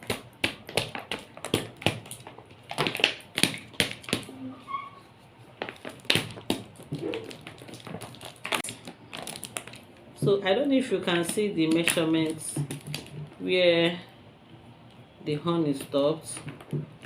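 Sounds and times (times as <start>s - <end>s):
plastic bottle tapping and clicking: 11.1s - 13.4s.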